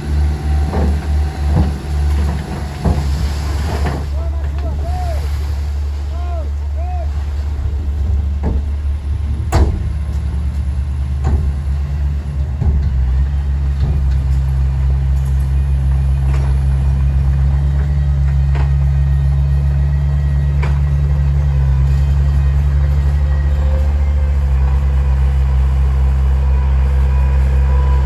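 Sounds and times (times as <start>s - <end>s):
heavy diesel engine under load: 0.0s - 28.0s
sharp knocks: 7.9s - 14.1s.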